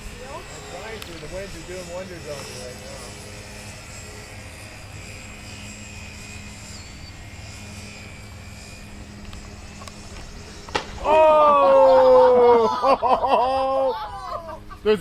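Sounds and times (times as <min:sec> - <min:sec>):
model airplane motor whine: 0:00.0 - 0:15.0
wind: 0:00.0 - 0:15.0
person shouting: 0:11.0 - 0:12.8.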